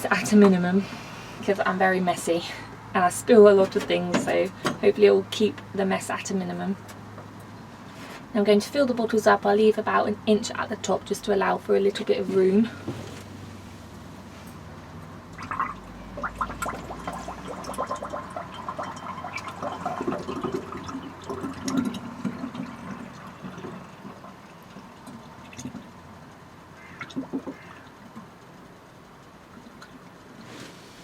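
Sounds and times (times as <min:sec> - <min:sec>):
liquid gurgling into a bottle: 0:15.4 - 0:26.0.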